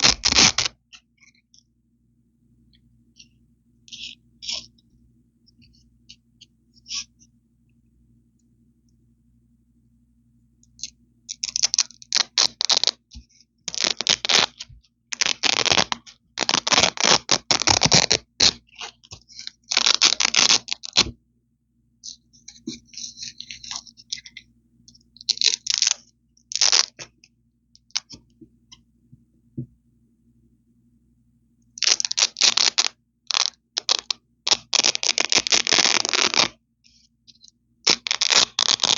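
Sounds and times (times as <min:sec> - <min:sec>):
velcro ripping apart: 0:00.0 - 0:00.8, 0:11.4 - 0:13.0, 0:13.7 - 0:21.1, 0:25.3 - 0:27.1, 0:31.8 - 0:36.6, 0:37.9 - 0:38.9.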